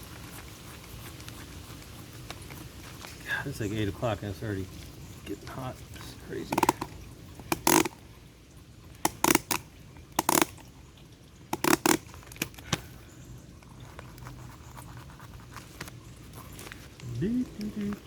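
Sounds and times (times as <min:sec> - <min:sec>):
paper filter scraping and crinkling: 0:13.7 - 0:18.0.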